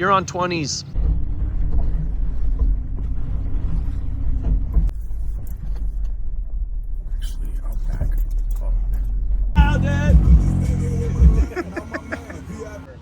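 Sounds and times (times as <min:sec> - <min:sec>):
suv engine running low: 0:00.9 - 0:13.0
vehicle knocks and creaks: 0:01.0 - 0:06.2.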